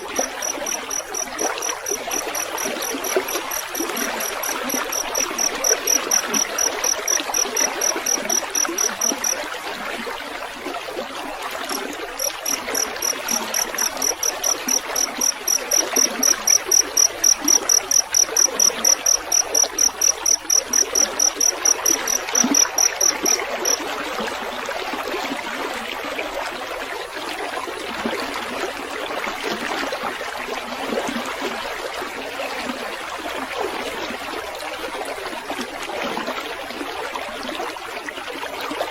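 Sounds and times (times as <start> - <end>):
field cricket chirping: 0.0 - 9.4, 11.7 - 23.8
trickling water: 0.0 - 38.9.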